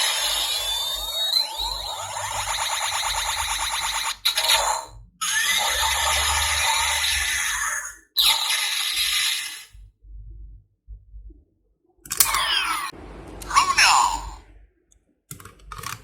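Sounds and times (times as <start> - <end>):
toy belt electronic sound effects: 0.0 - 9.7, 12.2 - 14.3.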